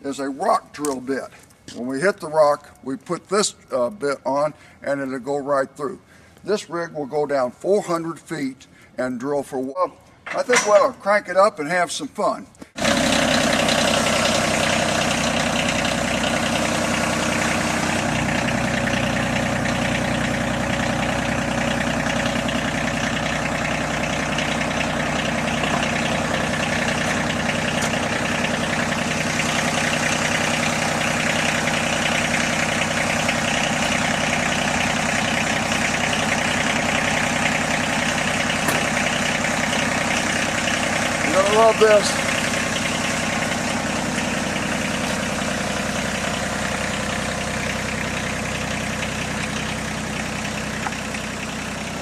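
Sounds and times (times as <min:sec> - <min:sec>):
drilling rig engine running: 0:12.8 - 0:52.0.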